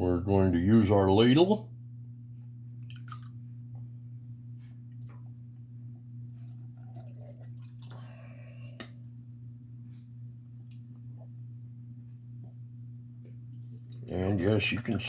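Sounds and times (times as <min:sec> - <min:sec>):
steady low hum: 0:00.0 - 0:15.0
liquid drips and splashes: 0:02.6 - 0:03.8, 0:06.4 - 0:09.0, 0:13.7 - 0:15.0
ladle pouring liquid into jars: 0:06.8 - 0:08.2, 0:13.8 - 0:15.0.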